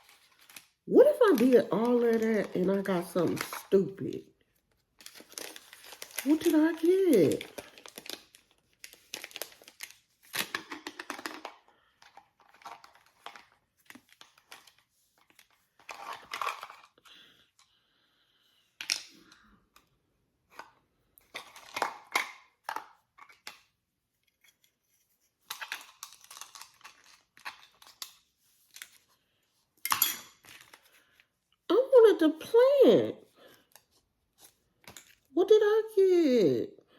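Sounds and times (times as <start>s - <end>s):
packaging being torn and crinkled: 0.0s - 3.8s, 4.7s - 11.6s, 12.2s - 16.9s, 25.5s - 29.1s.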